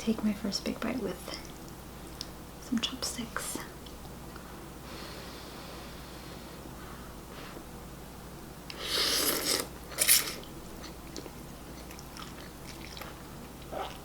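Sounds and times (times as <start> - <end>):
soft chewing clicks: 1.4 - 2.4, 10.4 - 14.0
noisy mouth slurping sounds: 8.8 - 10.4.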